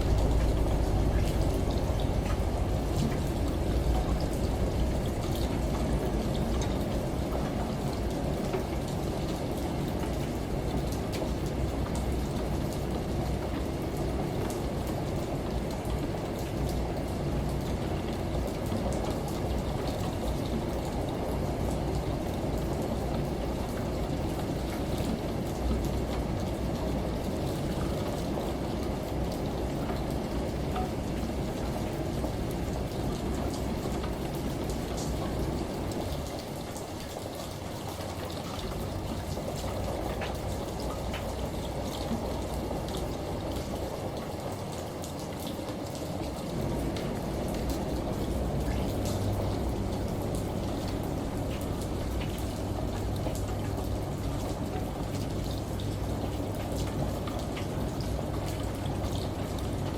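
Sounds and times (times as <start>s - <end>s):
low steady rumble: 0.0s - 7.0s
steady rain falling: 0.0s - 59.9s.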